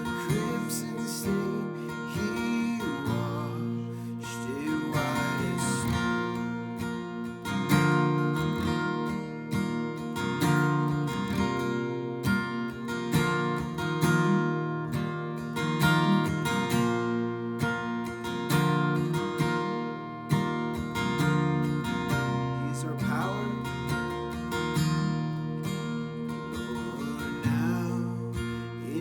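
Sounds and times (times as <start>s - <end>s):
acoustic guitar strumming chords: 0.0s - 29.0s.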